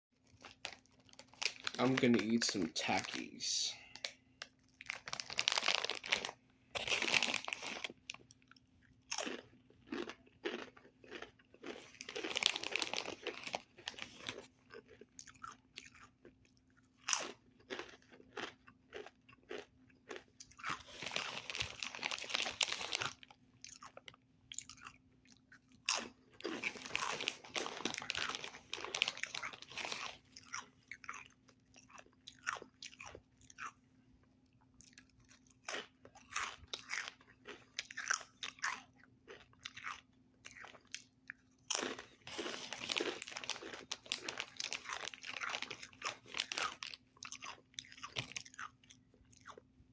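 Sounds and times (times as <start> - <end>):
crunchy chip bites and chewing: 3.9 - 33.8, 34.6 - 49.7.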